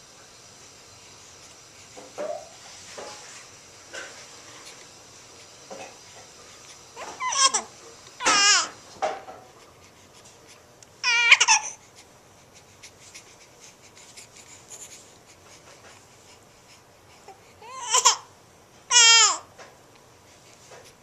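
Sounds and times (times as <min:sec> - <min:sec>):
baby squealing: 0:07.0 - 0:08.7, 0:11.0 - 0:11.8, 0:18.9 - 0:19.4.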